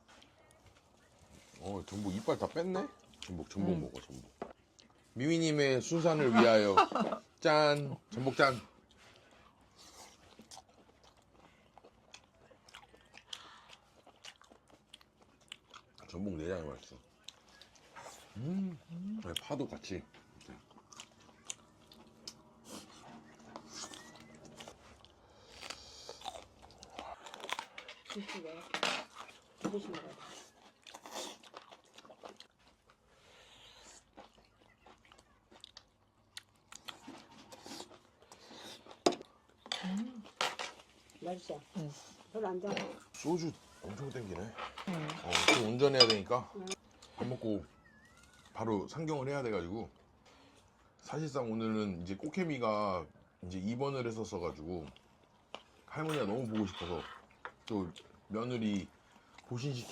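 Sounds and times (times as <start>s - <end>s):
person chewing: 8.7s - 16.2s, 16.9s - 28.2s, 29.0s - 41.2s.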